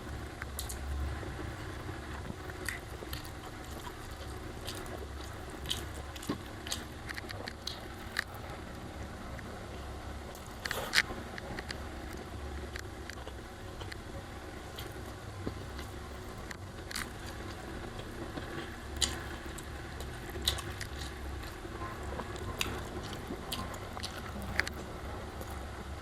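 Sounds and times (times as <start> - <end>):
steady low hum: 0.0 - 26.0
person chewing and biting: 2.3 - 8.4, 10.3 - 12.2, 14.7 - 25.6.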